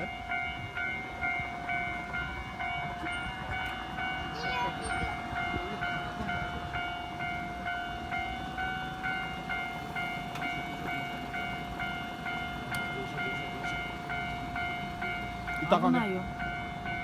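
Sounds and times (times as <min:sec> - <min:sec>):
level crossing warning bell: 0:00.0 - 0:17.0.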